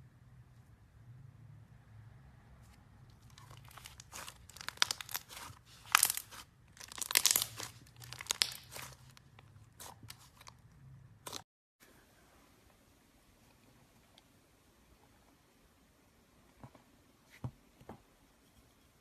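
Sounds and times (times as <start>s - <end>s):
crunchy slime crackling: 3.1s - 10.6s.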